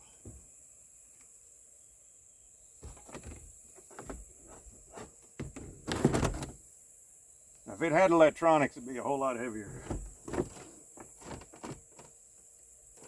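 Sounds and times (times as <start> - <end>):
plastic dashboard being handled: 2.8 - 6.6, 9.7 - 12.1.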